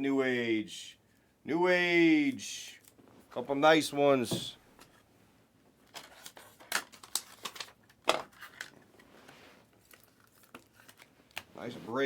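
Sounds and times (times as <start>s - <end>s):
trading cards snapping and rustling: 5.9s - 8.8s.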